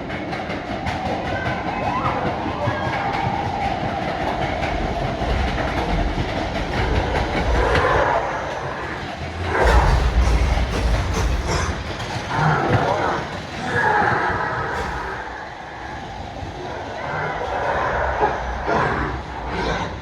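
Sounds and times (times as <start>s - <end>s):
roller coaster car rattling on track: 0.0s - 20.0s.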